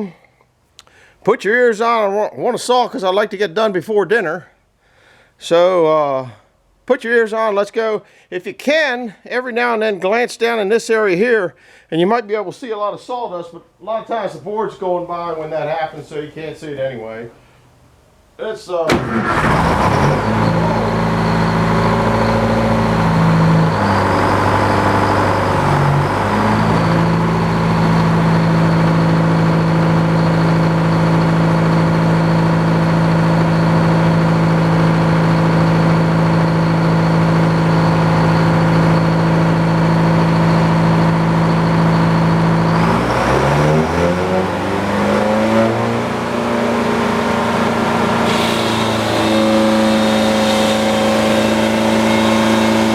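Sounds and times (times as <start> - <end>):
sawmill engine with high whine: 18.9 - 52.9.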